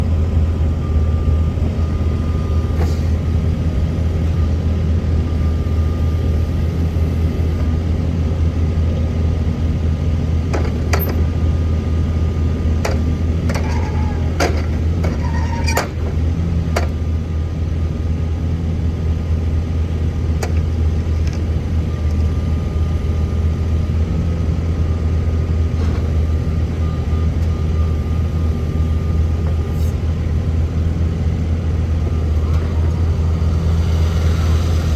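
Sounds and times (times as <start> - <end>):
diesel engine running: 0.0 - 34.9.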